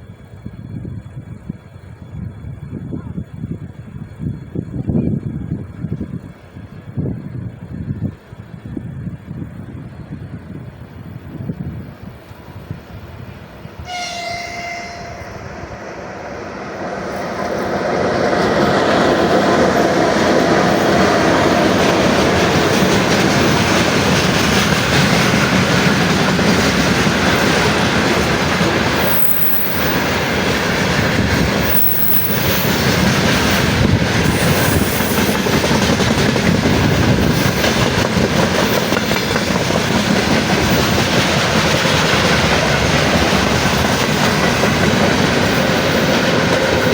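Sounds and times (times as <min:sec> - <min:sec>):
train passing rumble: 0:00.0 - 0:46.9
train horn blast: 0:13.8 - 0:15.7.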